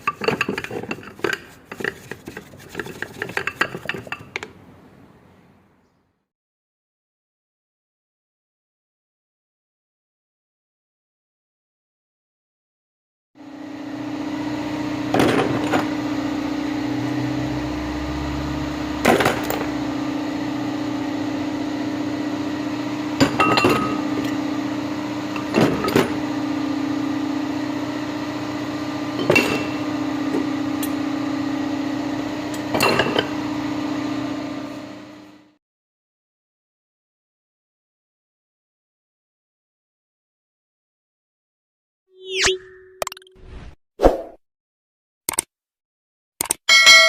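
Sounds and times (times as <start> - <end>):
steady mechanical hum: 13.4 - 35.6.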